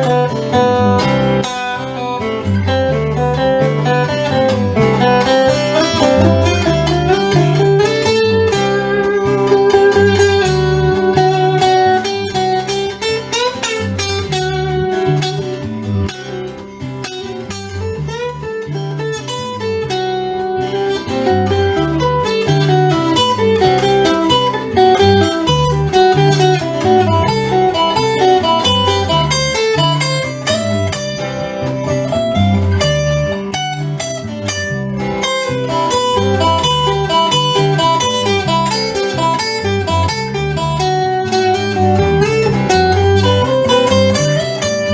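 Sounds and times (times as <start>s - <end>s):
blues guitar over bass and beat: 0.0s - 44.9s.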